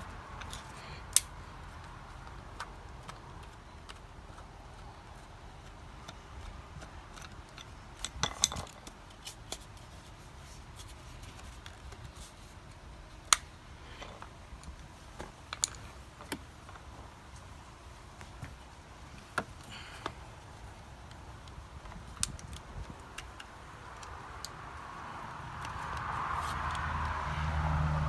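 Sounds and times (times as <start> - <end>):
screwdriver and plastic parts clicking: 0.4 - 9.7, 21.0 - 24.6.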